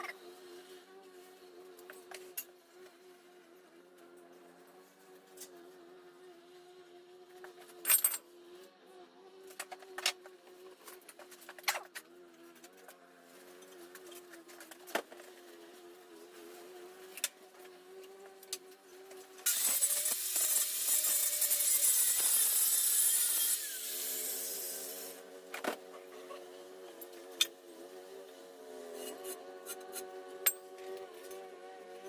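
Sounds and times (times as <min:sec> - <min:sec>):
angle grinder cutting steel: 0:19.4 - 0:25.3, 0:28.8 - 0:31.4.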